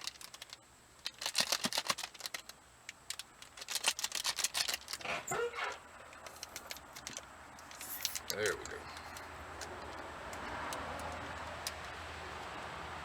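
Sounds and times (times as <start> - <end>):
plastic packaging crinkling: 0.0 - 9.8.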